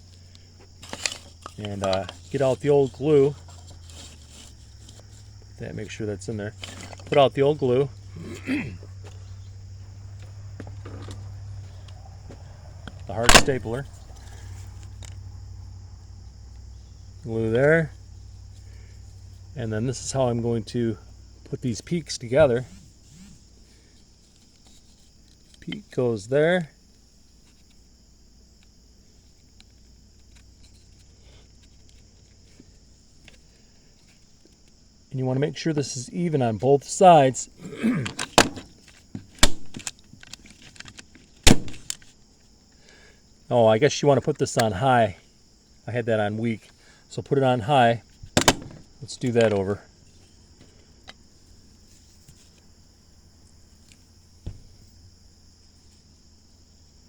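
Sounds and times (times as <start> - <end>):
crickets chirring: 0.0 - 57.0
steady low hum and hiss: 0.0 - 57.0
wooden boards tapping and clicking: 48.4 - 48.9.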